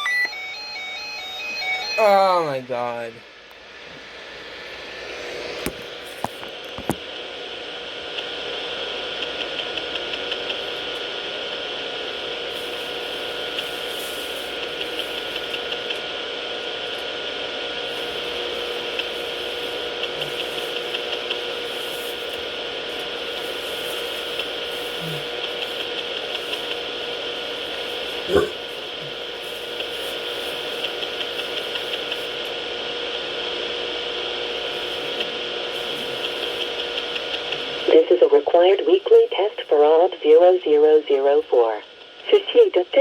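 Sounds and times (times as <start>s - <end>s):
radio static hiss: 1.9s - 43.0s
ticking interference: 9.2s - 37.9s.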